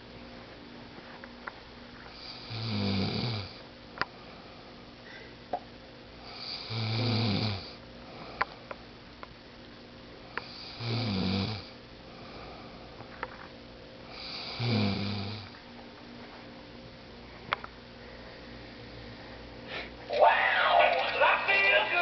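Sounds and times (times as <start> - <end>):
woman snoring: 2.2 - 3.6, 6.3 - 7.8, 10.5 - 11.7, 14.1 - 15.5.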